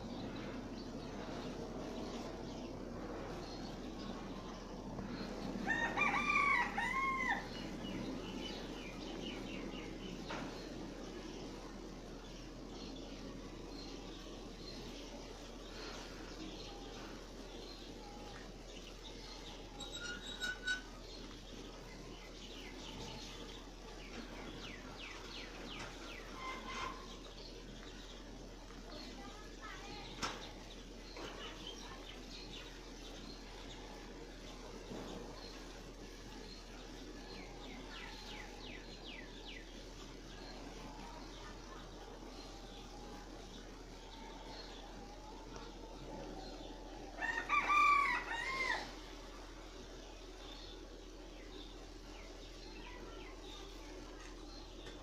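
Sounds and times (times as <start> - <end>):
birds chirping: 0.0 - 55.0
steady low hum: 0.0 - 55.0
rooster crowing: 5.6 - 7.6, 47.2 - 49.0.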